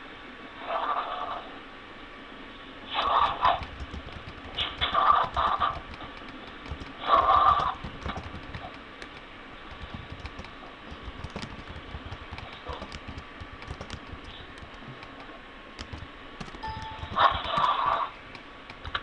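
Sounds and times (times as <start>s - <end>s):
faint clicks: 3.5s - 19.0s.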